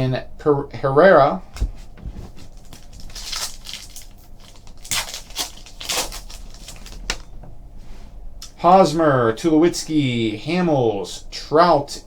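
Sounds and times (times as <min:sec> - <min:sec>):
cards and wrapper rustling: 0:02.3 - 0:07.3.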